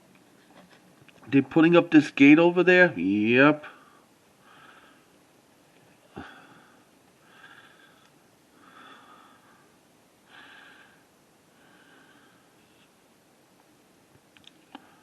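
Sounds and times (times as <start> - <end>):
soft breathing: 3.7 - 5.2, 5.8 - 13.0, 14.7 - 15.0.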